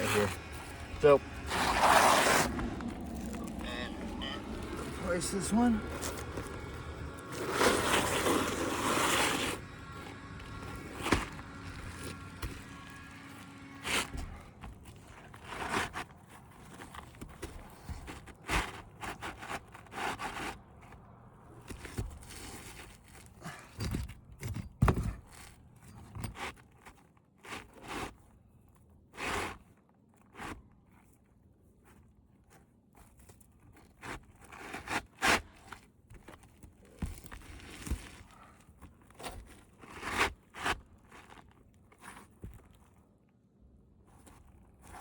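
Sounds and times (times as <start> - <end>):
roof shingles scraping and tearing: 0.0 - 20.5, 36.4 - 42.8.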